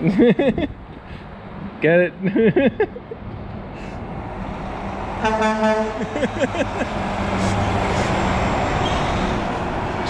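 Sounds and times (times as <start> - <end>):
truck engine and tyres passing: 0.0 - 10.0
truck horn toot: 5.2 - 6.2, 8.8 - 9.4.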